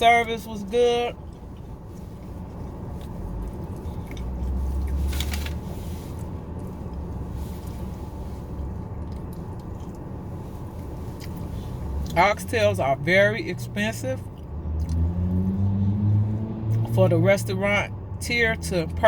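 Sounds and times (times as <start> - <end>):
person chewing food: 1.2 - 5.4, 8.6 - 12.2, 14.3 - 15.2.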